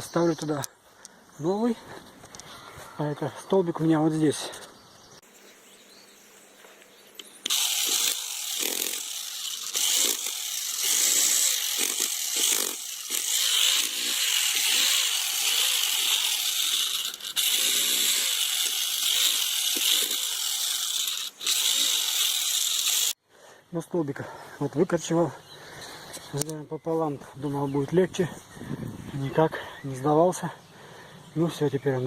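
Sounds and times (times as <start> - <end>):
saw cutting: 7.2 - 23.2.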